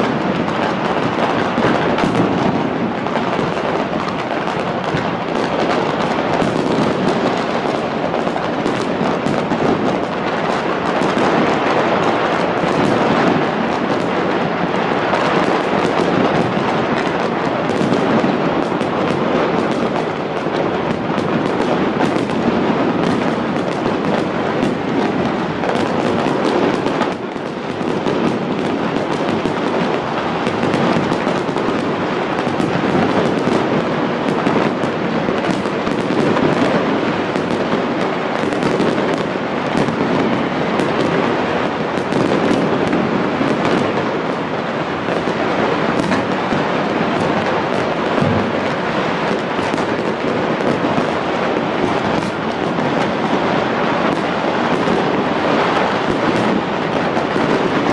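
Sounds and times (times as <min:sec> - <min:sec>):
fireworks bangs and crackle: 0:00.0 - 0:57.9.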